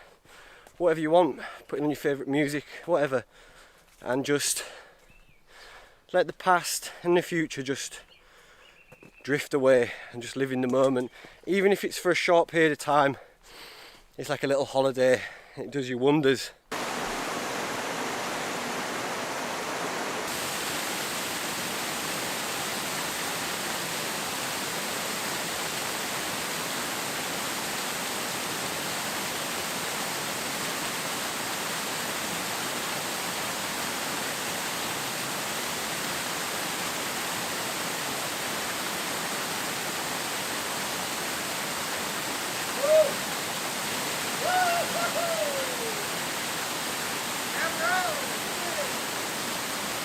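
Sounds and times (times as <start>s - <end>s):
rain rushing: 16.7s - 50.0s
short call: 42.8s - 43.2s, 44.4s - 46.1s.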